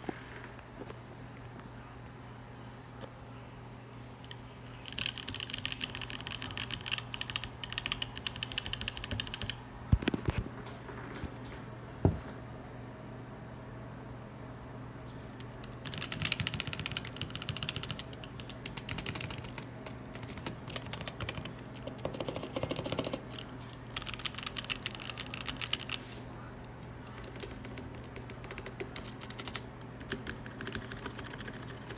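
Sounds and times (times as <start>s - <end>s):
faint low hum: 0.0s - 31.9s
mechanical keyboard typing: 4.2s - 10.2s, 15.4s - 26.0s, 27.0s - 31.9s.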